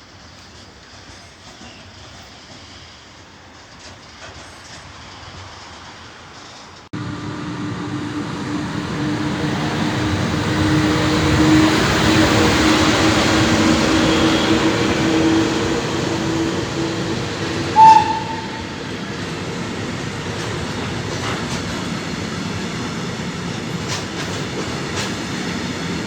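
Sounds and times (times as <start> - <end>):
freight train rumble: 0.0 - 26.0
locomotive low hum: 7.0 - 21.9.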